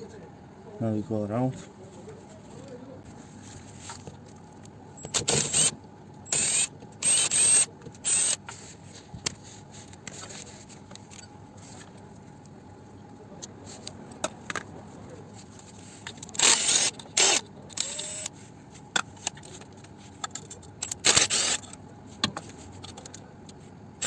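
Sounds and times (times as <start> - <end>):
ratcheting tool bursts: 5.0 - 5.7, 6.3 - 8.4, 16.4 - 18.3, 20.8 - 21.8.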